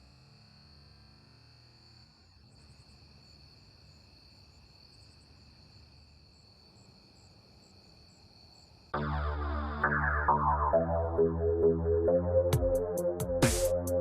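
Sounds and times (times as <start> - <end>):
insect trill chirping: 0.0 - 9.0.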